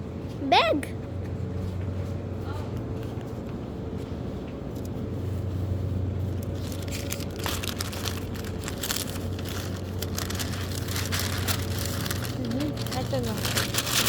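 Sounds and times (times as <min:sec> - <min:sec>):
steady low hum: 0:00.0 - 0:14.0
plastic bag crinkling: 0:06.4 - 0:14.0.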